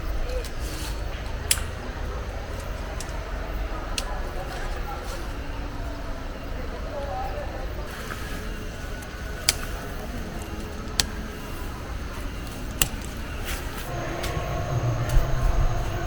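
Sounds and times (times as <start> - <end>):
low droning hum: 8.7 - 16.0
steady low rumble: 13.9 - 16.0.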